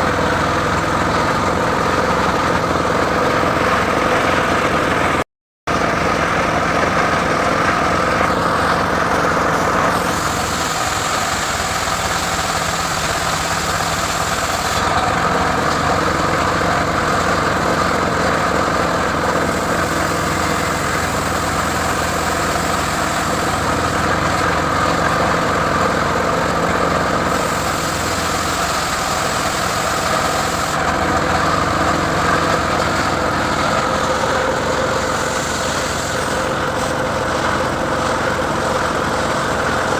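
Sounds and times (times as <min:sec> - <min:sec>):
saw rig engine running: 0:00.0 - 0:39.9.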